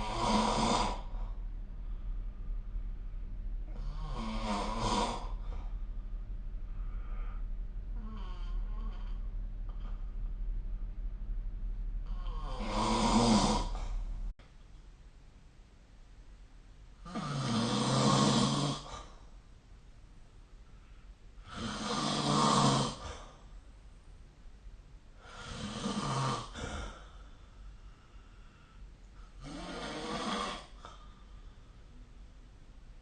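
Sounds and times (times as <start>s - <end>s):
person snoring: 0.0s - 1.4s, 3.6s - 5.8s, 6.8s - 10.0s, 12.0s - 14.0s, 17.0s - 19.2s, 21.4s - 23.4s, 25.2s - 27.2s, 29.4s - 31.2s.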